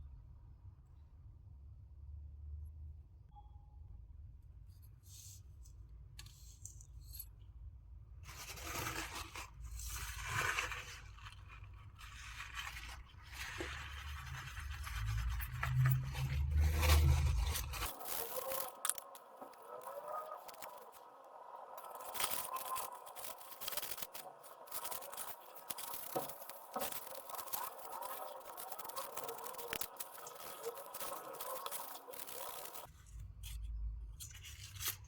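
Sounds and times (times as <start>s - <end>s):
scraping on a hard surface: 8.3s - 33.0s.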